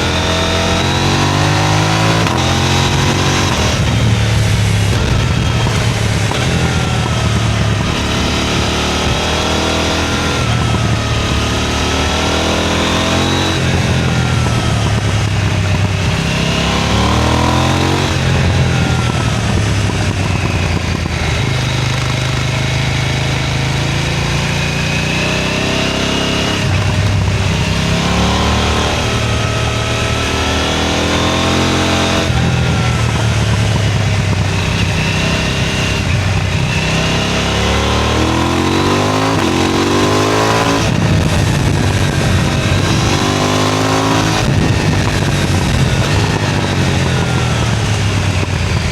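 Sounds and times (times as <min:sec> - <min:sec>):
motorcycle engine accelerating: 0:00.0 - 0:48.9.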